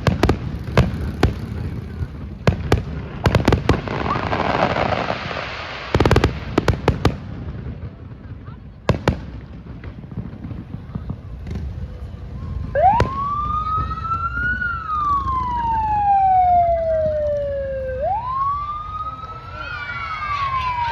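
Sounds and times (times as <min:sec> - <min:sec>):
siren wailing: 0:12.3 - 0:20.9.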